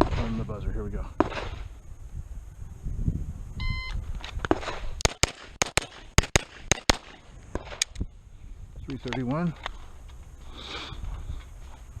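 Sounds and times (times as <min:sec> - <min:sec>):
pistol shots: 0:00.0 - 0:00.4, 0:01.2 - 0:01.6, 0:04.4 - 0:07.9.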